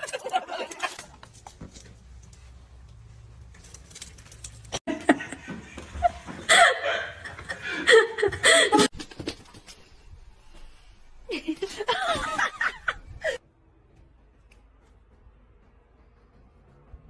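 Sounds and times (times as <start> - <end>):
person laughing hard: 4.9 - 8.9.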